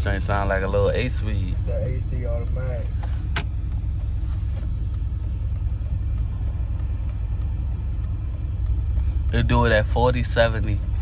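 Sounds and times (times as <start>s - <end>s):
vehicle engine and exhaust drone: 0.0s - 11.0s.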